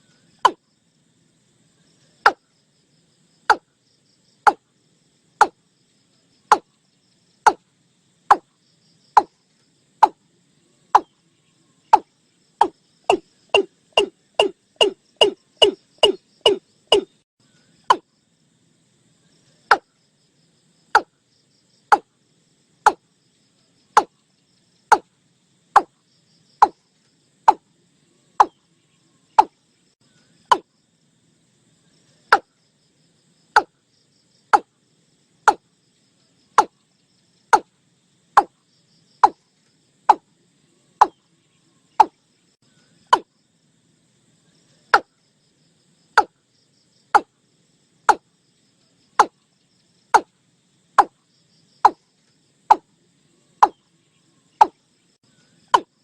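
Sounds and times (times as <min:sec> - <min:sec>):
faint insects or frogs: 0:00.0 - 0:56.0.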